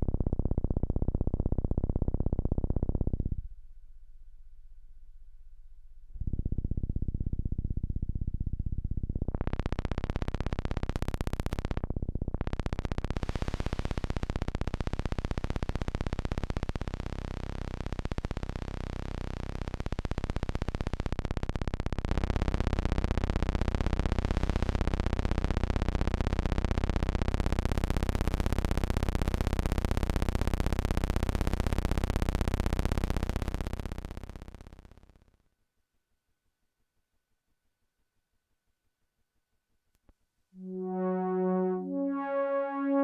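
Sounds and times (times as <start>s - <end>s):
synthesizer pulsing notes: 40.6s - 43.0s.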